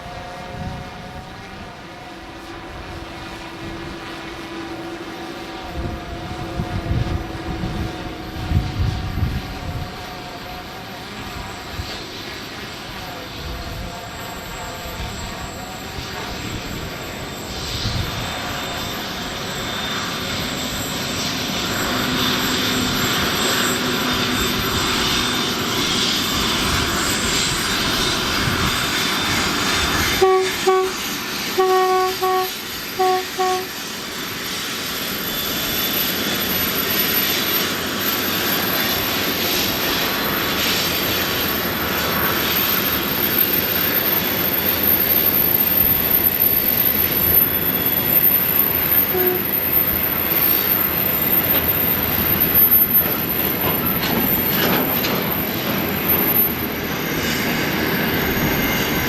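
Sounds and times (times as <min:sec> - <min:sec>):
freight train rumbling past: 0:00.0 - 0:59.0
train horn blasts: 0:30.0 - 0:33.8, 0:49.0 - 0:49.8.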